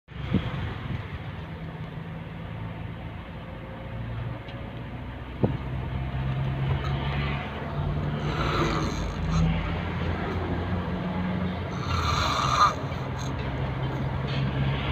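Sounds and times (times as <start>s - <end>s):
person snoring: 8.2s - 9.5s, 11.7s - 13.4s.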